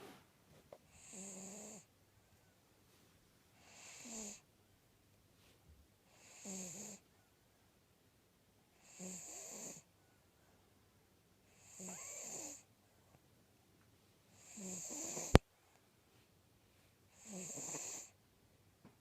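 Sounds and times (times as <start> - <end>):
dog snoring: 0.9 - 1.9, 3.6 - 4.4, 6.1 - 7.0, 8.8 - 9.9, 11.5 - 12.7, 14.4 - 15.4, 17.1 - 18.2.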